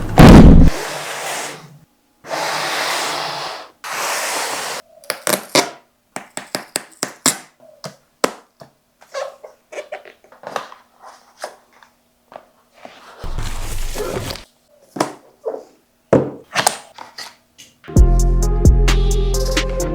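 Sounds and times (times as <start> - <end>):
rustling noise: 12.6 - 14.5.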